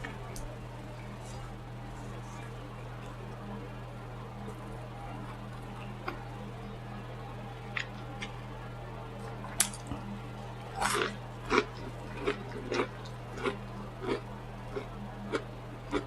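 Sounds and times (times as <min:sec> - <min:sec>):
steady low hum: 0:00.0 - 0:16.0
person chewing food: 0:10.7 - 0:16.0.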